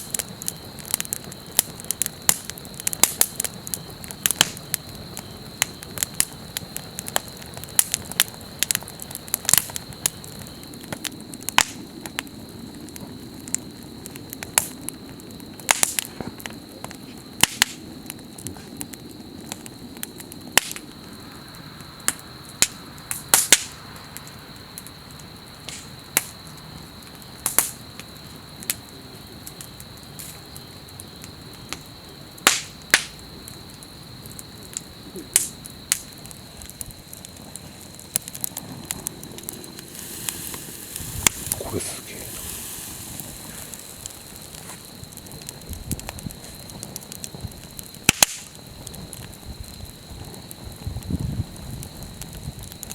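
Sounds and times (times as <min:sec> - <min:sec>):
hiss of burning: 0:00.0 - 0:10.6, 0:35.3 - 0:52.9
campfire crackling and popping: 0:00.0 - 0:52.9.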